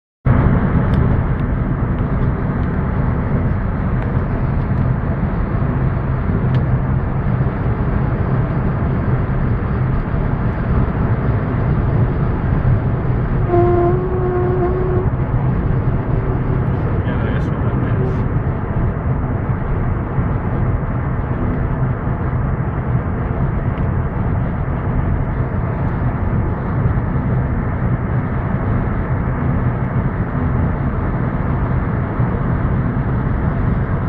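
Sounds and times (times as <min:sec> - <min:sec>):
wind and road rumble in car: 0:00.3 - 0:34.0
humming tone: 0:13.3 - 0:15.9.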